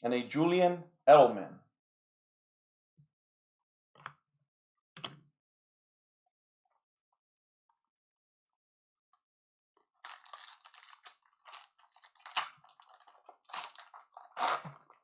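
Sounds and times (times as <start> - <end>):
trading cards crinkling and rustling: 9.8 - 15.0.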